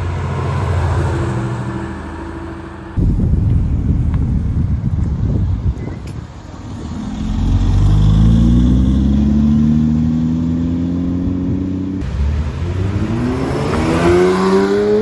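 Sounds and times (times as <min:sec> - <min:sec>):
car engine accelerating: 0:06.6 - 0:15.0.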